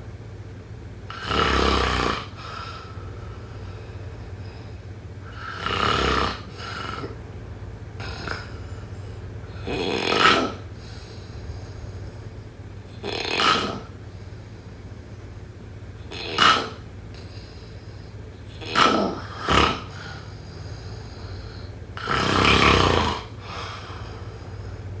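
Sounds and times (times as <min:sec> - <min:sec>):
person snoring: 0:01.1 - 0:03.7, 0:04.4 - 0:07.2, 0:08.0 - 0:08.8, 0:09.5 - 0:12.1, 0:12.9 - 0:13.9, 0:18.6 - 0:24.8.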